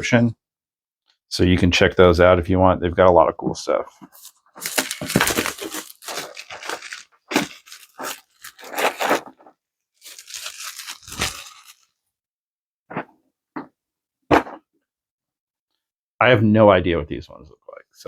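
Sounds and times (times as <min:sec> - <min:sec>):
packaging tearing and crinkling: 0:04.2 - 0:09.4, 0:10.0 - 0:11.9.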